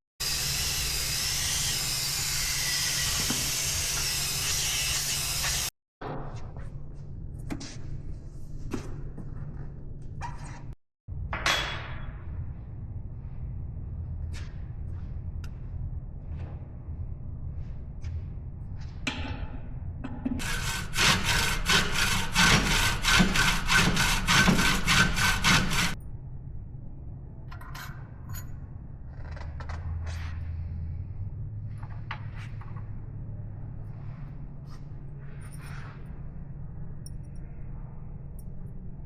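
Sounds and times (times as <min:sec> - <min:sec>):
hand saw cutting: 0:20.4 - 0:26.0.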